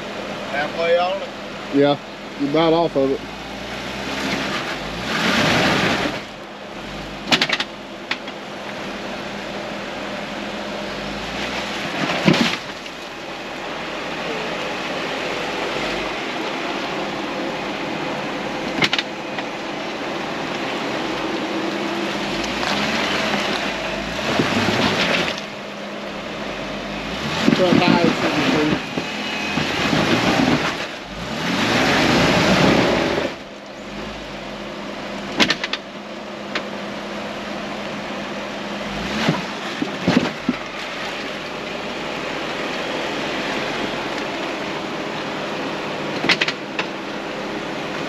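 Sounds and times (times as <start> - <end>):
engine running low: 0.0 - 48.0
sharp knocks and clunks: 35.4 - 35.8.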